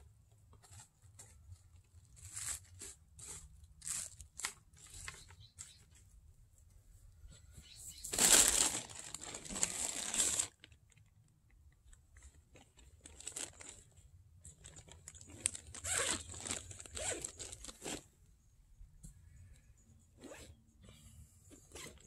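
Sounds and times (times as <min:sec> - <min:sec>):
crinkling and rustling: 0:00.1 - 0:07.1, 0:08.0 - 0:18.1.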